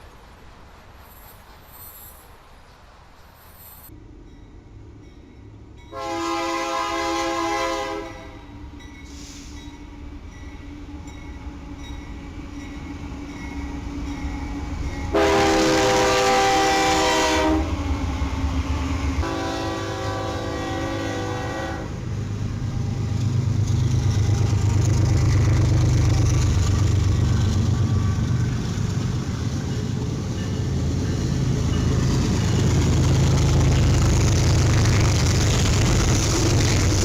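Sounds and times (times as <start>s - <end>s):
train rumbling past: 0.0s - 37.0s
locomotive horn chord: 5.9s - 8.5s, 15.1s - 17.8s, 19.2s - 22.1s.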